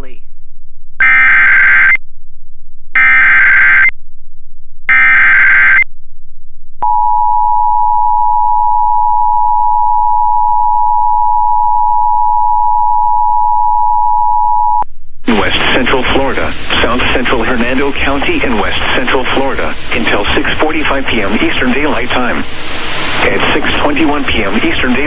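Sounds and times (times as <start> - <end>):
person announcing alert: 0.0 - 0.2
electronic data burst screech: 1.0 - 2.0, 3.0 - 3.9, 4.9 - 5.8.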